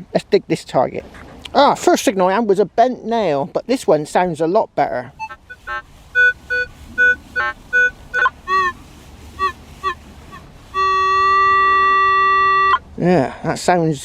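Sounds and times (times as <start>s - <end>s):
metal detector beeping: 5.2s - 8.7s, 10.8s - 12.8s.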